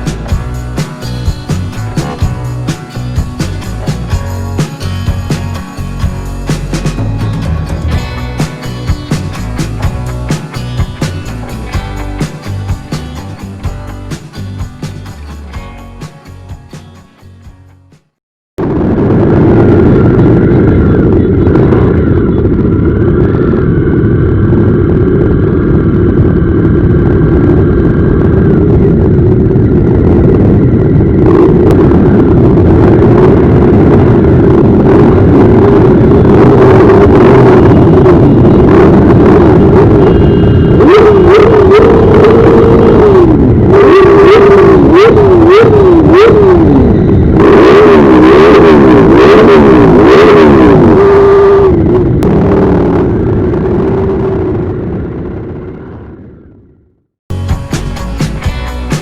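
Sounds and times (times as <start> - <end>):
motorcycle engines roaring: 0.0 - 15.5
tone sweeping up and down: 28.7 - 52.3.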